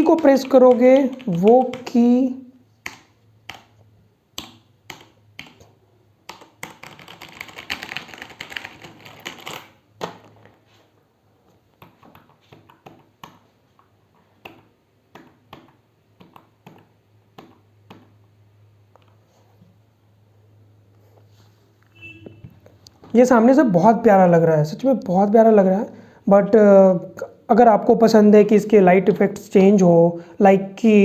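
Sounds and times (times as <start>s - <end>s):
mechanical keyboard typing: 0.0s - 2.1s, 4.4s - 10.2s.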